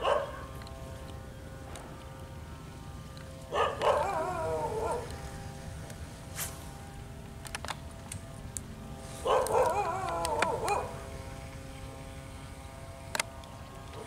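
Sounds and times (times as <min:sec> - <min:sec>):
animal wavering call: 0:03.5 - 0:05.6, 0:09.2 - 0:11.1.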